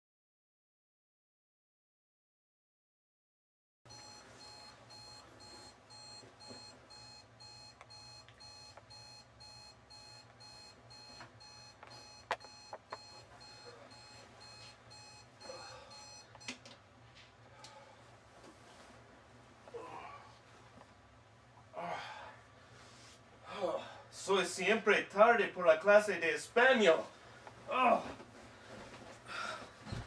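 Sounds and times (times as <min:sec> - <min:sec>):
alarm clock beeping: 0:03.9 - 0:16.6.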